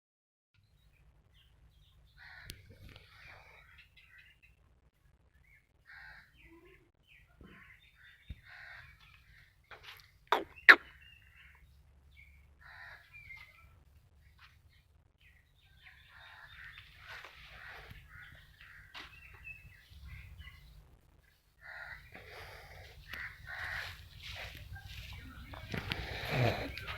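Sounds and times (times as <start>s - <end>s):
birds chirping: 5.3s - 26.9s.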